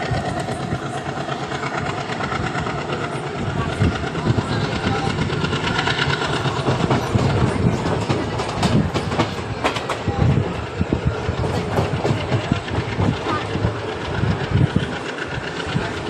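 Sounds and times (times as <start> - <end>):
train rumble: 0.0 - 16.0.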